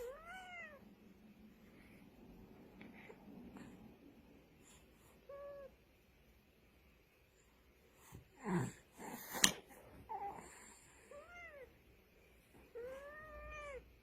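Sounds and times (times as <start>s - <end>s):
cat meowing: 0.0s - 0.8s, 12.7s - 13.8s.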